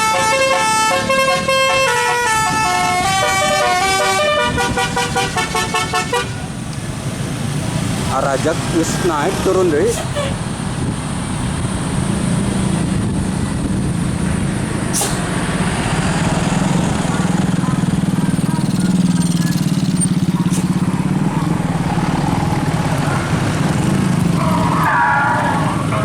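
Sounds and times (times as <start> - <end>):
vehicle engine running: 10.4 - 26.0.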